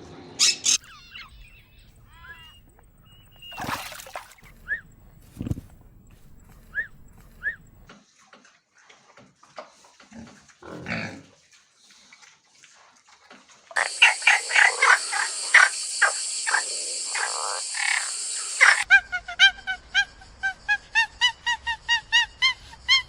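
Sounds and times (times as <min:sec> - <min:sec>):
short animal calls: 0:00.4 - 0:07.9, 0:13.8 - 0:18.9
steady hiss: 0:13.8 - 0:18.8.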